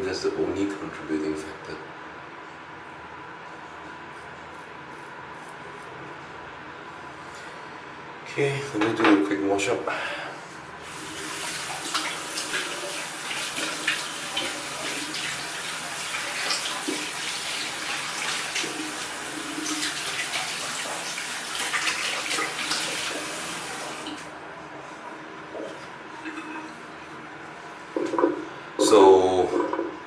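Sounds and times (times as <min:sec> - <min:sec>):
water splashing: 0:10.9 - 0:24.2.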